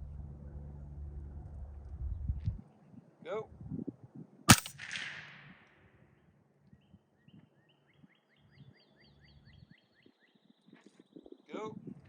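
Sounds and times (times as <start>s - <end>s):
gunshot echo: 4.5s - 5.8s
suppressed gunshot crack: 4.5s - 5.8s
bird chirping: 6.7s - 11.6s.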